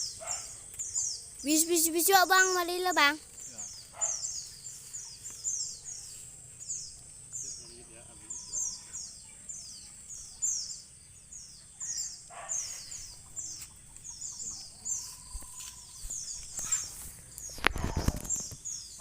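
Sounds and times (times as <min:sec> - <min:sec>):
high downward-sliding bird chirps: 0:00.0 - 0:19.0.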